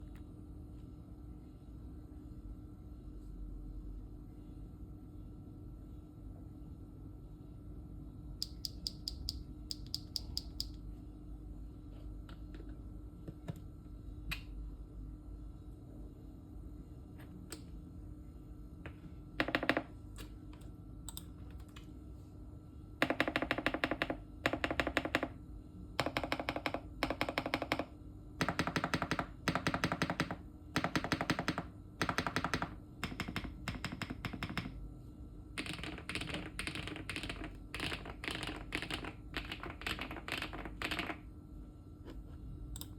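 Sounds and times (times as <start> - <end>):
mechanical keyboard typing: 8.4 - 10.7, 23.0 - 25.3, 26.0 - 34.8, 35.6 - 41.2.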